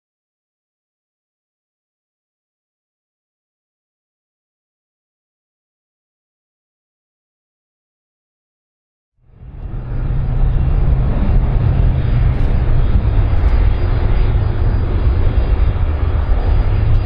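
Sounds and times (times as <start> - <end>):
airplane engines rumbling: 9.2 - 17.0.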